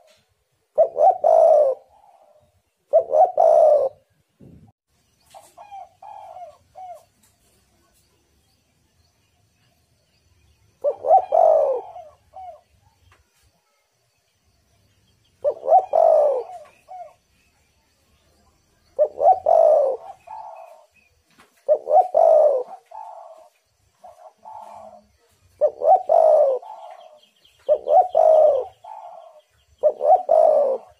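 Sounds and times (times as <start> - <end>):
dove cooing: 0.0 - 4.1, 5.3 - 7.2, 10.8 - 12.7, 15.4 - 17.2, 18.8 - 21.0, 21.6 - 30.9.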